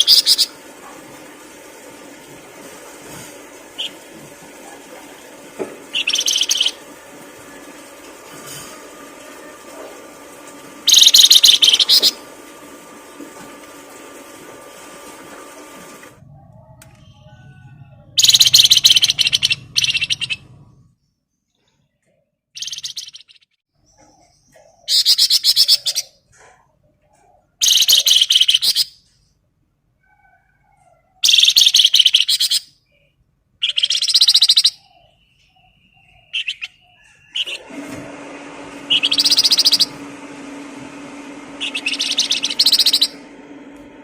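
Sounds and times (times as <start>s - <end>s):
songbird trilling: 5.9s - 6.8s, 10.9s - 12.2s, 18.2s - 20.4s, 22.6s - 23.4s, 33.6s - 37.6s, 38.9s - 39.9s, 41.6s - 43.2s.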